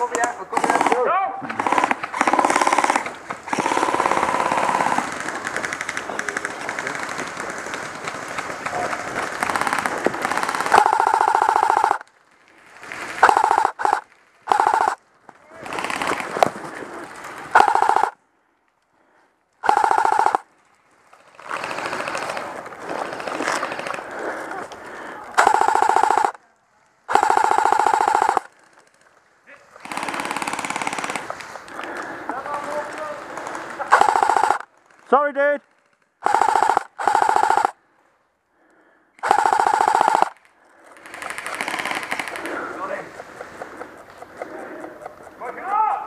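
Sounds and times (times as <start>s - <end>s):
airsoft rifle full-auto bursts: 0.0s - 12.0s, 13.2s - 15.0s, 15.6s - 16.6s, 17.5s - 18.2s, 19.6s - 20.5s, 21.2s - 24.4s, 25.4s - 26.4s, 27.1s - 28.7s, 29.8s - 31.5s, 32.4s - 34.7s, 36.2s - 37.8s, 39.2s - 42.9s
rough steady noise: 0.0s - 18.3s, 36.2s - 46.0s.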